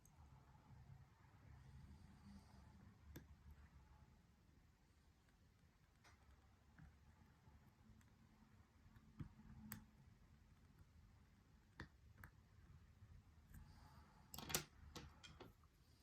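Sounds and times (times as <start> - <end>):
lock picks clicking in padlock: 14.4 - 15.4.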